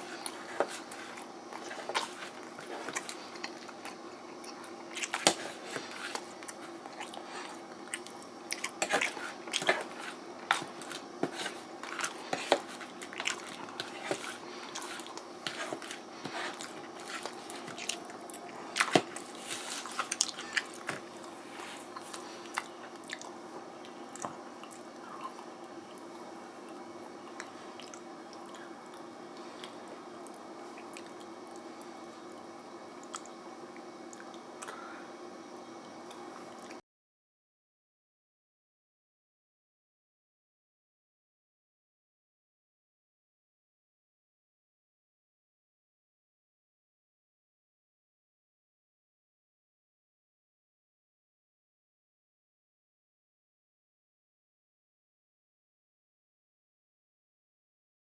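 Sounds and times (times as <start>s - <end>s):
person chewing noodles: 0.0s - 26.0s
low background hum: 0.0s - 36.8s.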